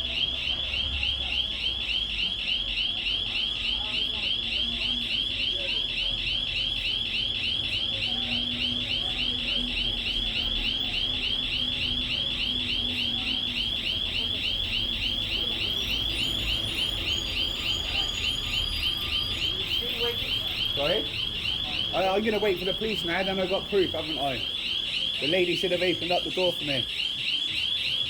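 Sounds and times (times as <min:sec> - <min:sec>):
warbling high-pitched alarm: 0:00.0 - 0:28.0.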